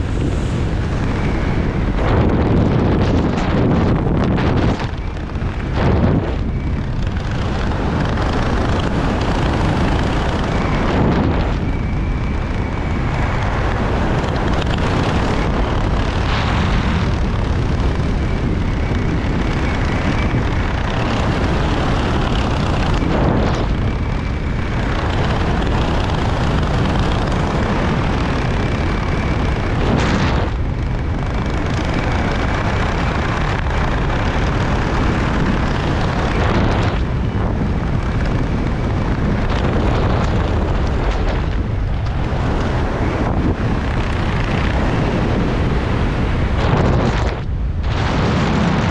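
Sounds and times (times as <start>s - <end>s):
wind buffeting microphone: 0.0s - 48.9s.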